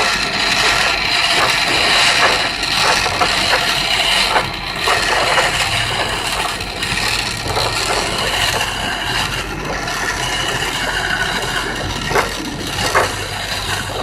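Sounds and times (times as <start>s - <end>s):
chisel scraping wood on a lathe: 0.0s - 14.0s
busy hall noise: 2.4s - 14.0s.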